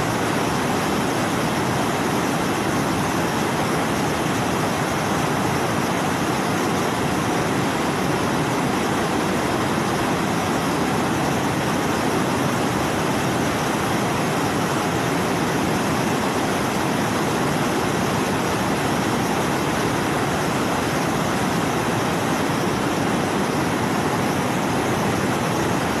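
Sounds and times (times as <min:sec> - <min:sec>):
waterfall roaring: 0:00.0 - 0:26.0.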